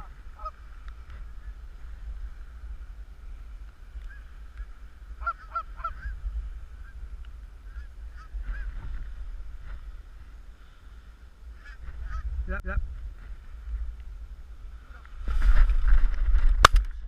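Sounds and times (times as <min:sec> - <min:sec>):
geese honking: 0:00.0 - 0:01.5, 0:04.0 - 0:07.0, 0:07.6 - 0:09.0, 0:11.6 - 0:12.3.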